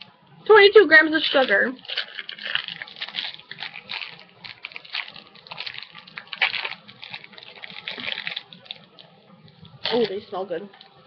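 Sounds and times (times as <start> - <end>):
plastic wrapper crinkling: 1.1 - 11.0.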